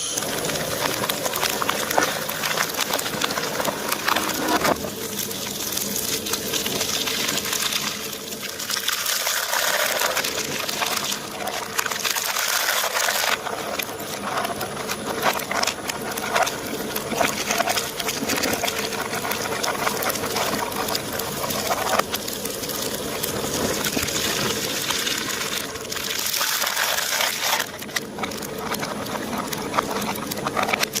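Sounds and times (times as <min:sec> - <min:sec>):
shredder crunching plastic: 0:00.0 - 0:31.0.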